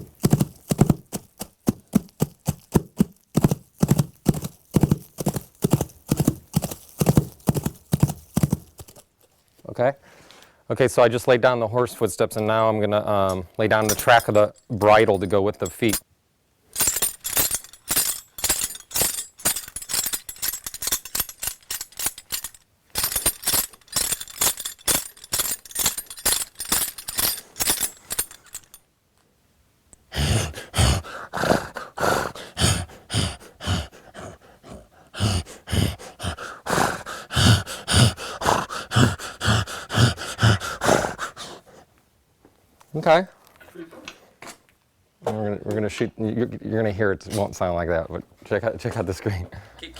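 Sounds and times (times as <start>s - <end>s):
horse bridle jingling: 0.0s - 9.3s, 13.7s - 16.0s, 16.7s - 28.9s, 30.2s - 41.7s.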